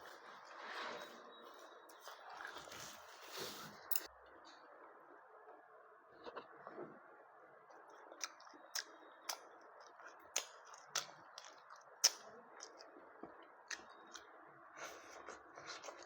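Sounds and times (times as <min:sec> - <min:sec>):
person chewing crunchy food: 0:01.9 - 0:03.6, 0:08.1 - 0:12.9, 0:13.6 - 0:16.0.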